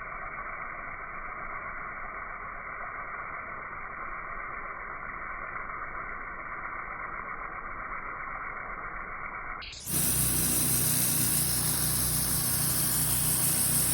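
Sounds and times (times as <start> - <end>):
high-pressure water spray hiss: 0.0 - 13.9
pressure washer engine drone: 9.6 - 13.9.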